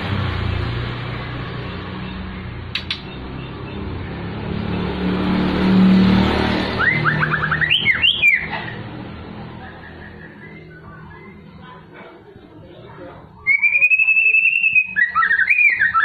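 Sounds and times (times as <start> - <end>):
road traffic rumble: 0.0 - 16.0
vehicle passing: 0.0 - 16.0
bird singing chirping notes: 2.0 - 4.9, 6.7 - 8.8, 9.6 - 11.7, 13.3 - 16.0.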